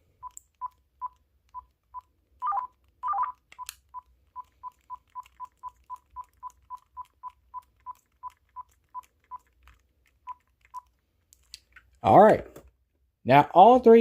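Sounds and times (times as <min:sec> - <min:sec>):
keypad beeping: 0:00.2 - 0:09.6, 0:10.2 - 0:10.9.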